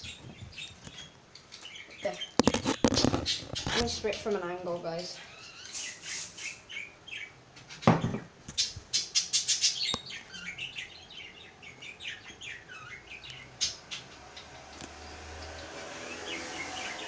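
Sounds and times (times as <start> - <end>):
aerosol spray can hissing: 5.7 - 6.6.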